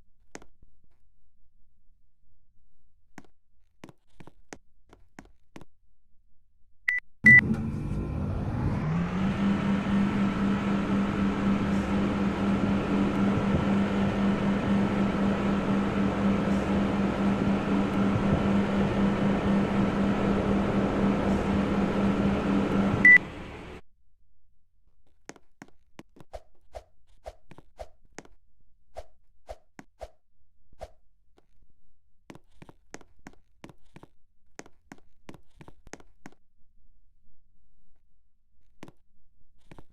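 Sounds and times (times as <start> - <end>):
air conditioner beep: 6.9 - 7.6, 20.6 - 23.3
air conditioner fan humming: 7.3 - 23.8.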